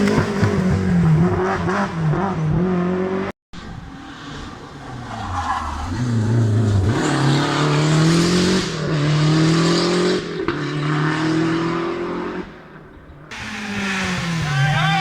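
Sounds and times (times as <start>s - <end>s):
rally car accelerating hard: 0.0s - 3.3s, 4.0s - 12.6s, 13.3s - 15.0s.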